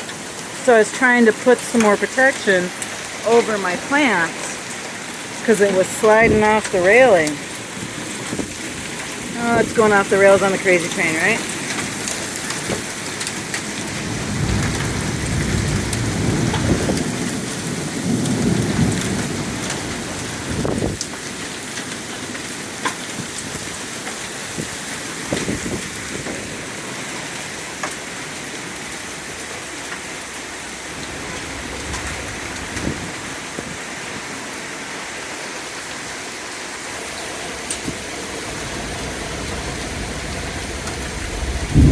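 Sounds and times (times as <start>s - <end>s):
drops or hailstones ticking: 0.0s - 41.9s
heavy rain pouring: 0.0s - 41.9s
thunder rumbling: 0.6s - 21.1s, 24.6s - 34.5s, 36.7s - 41.9s.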